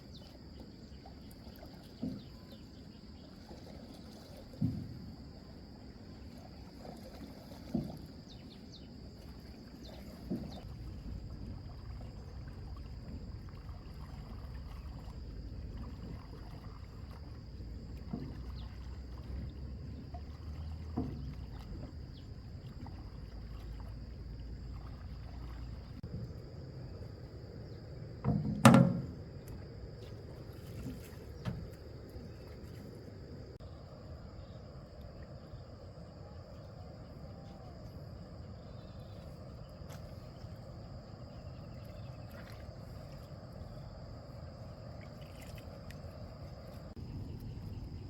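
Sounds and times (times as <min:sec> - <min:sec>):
water lapping: 0:00.0 - 0:48.0
wooden knocks against hull: 0:01.8 - 0:02.5, 0:04.4 - 0:05.2, 0:07.5 - 0:08.4, 0:10.0 - 0:10.7, 0:17.8 - 0:23.0, 0:28.2 - 0:32.5
boat thump: 0:04.4 - 0:05.5, 0:17.6 - 0:22.8, 0:27.6 - 0:32.8.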